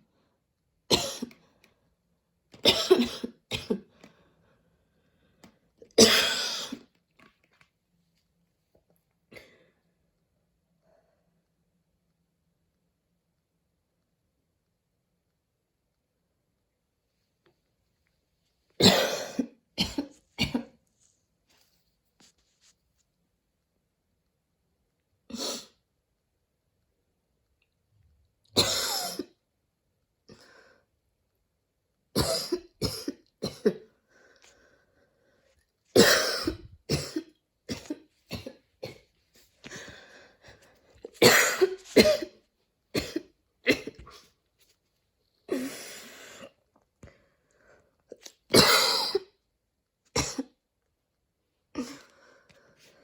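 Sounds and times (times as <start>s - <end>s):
woman coughing: 2.6s - 3.9s, 6.0s - 6.8s, 18.8s - 20.8s, 32.2s - 33.9s, 36.0s - 39.0s, 41.2s - 44.2s, 48.5s - 49.3s.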